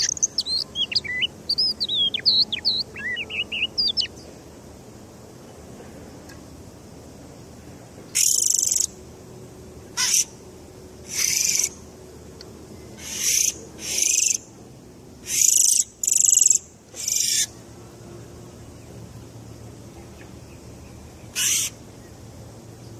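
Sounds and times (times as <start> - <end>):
bird giving harsh hissing calls: 8.1 - 9.0, 9.9 - 10.4, 11.0 - 11.8, 12.9 - 14.5, 15.2 - 17.6, 21.2 - 21.9.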